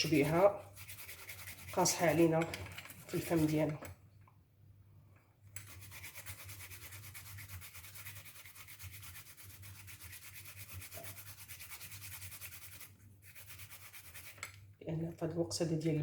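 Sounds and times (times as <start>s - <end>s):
garlic scraping on a grater: 3.1s - 3.6s.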